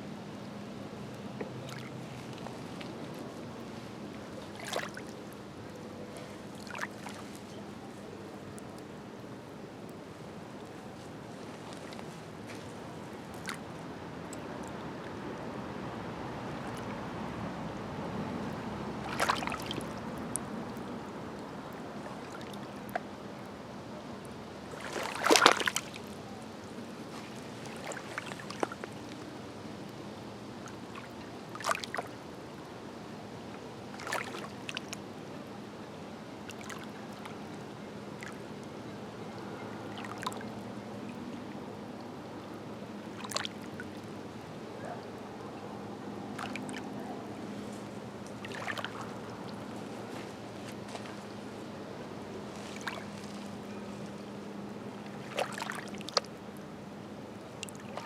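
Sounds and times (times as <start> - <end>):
small waves lapping at shore: 0.0 - 58.0
sharp water splashes: 4.4 - 5.2, 6.6 - 7.2, 19.0 - 20.0, 24.7 - 26.0, 33.9 - 34.9, 43.1 - 43.8, 46.3 - 46.9, 48.3 - 49.6, 52.7 - 53.4, 55.2 - 56.3.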